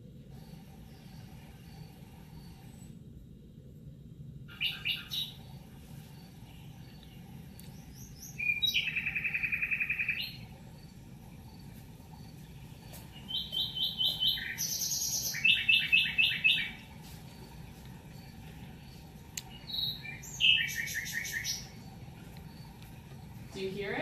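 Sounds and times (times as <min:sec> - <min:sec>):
songbird trilling: 0:04.5 - 0:05.5, 0:06.2 - 0:10.9, 0:12.2 - 0:22.8.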